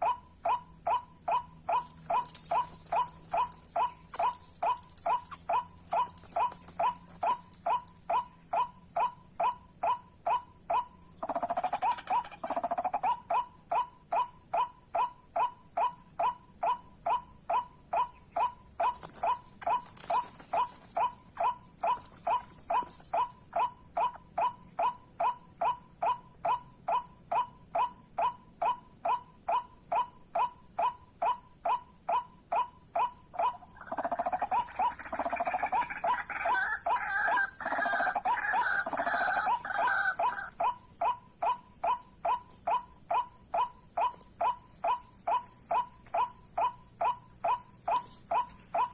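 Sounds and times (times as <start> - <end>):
more bird calling overlapping: 0.0 - 48.9.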